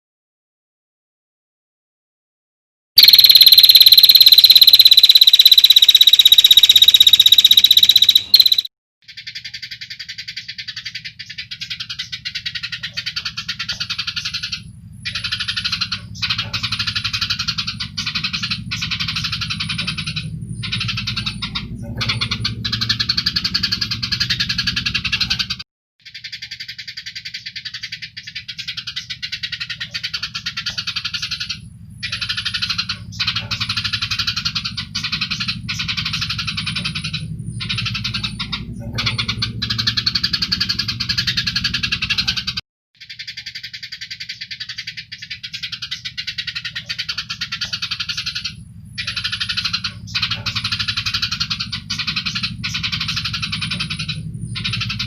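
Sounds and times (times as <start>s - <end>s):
shrill animal buzz: 3.0s - 8.6s
rapid pulsing rattle: 3.0s - 8.7s, 11.8s - 25.6s, 26.2s - 42.6s, 43.2s - 55.0s
low hum: 45.7s - 55.0s.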